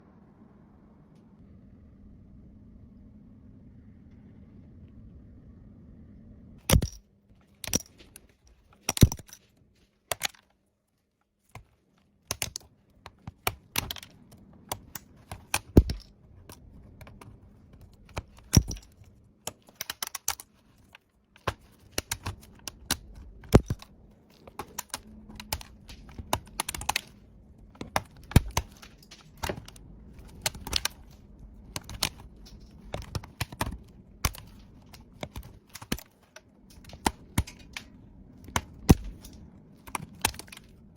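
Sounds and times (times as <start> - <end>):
laptop keyboard keys clicking: 8.8 - 9.4, 10.1 - 10.5, 12.3 - 40.9.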